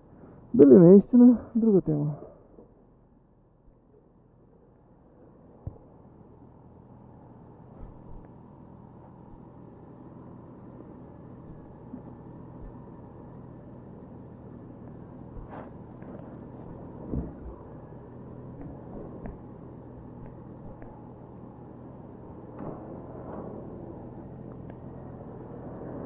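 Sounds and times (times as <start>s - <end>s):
motorcycle engine running: 5.5s - 26.0s.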